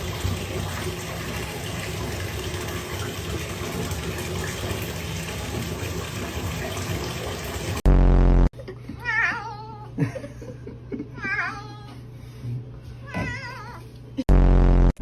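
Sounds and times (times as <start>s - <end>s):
water running from a tap: 0.0s - 7.8s.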